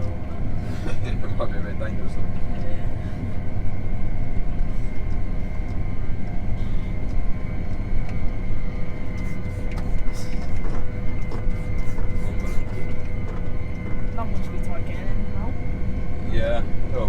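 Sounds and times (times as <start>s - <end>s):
engine drone and road rumble: 0.0s - 17.0s
whining tones: 3.5s - 17.0s.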